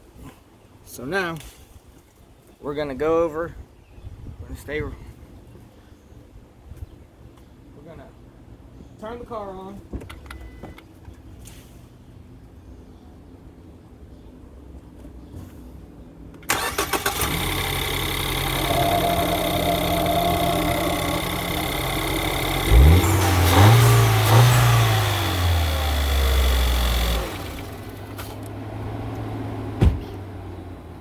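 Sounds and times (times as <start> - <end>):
starter motor cranking: 16.5 - 28.5
car engine idling: 16.5 - 31.0.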